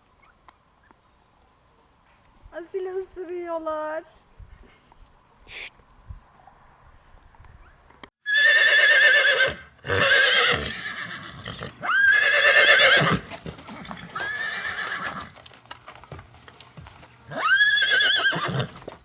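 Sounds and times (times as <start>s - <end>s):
horse whinnying: 8.2s - 15.3s, 17.3s - 18.9s.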